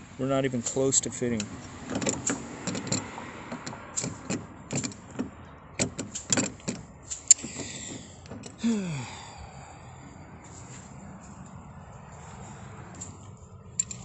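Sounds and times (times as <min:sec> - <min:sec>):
metal door handle clicking and knocking: 0:01.3 - 0:08.6.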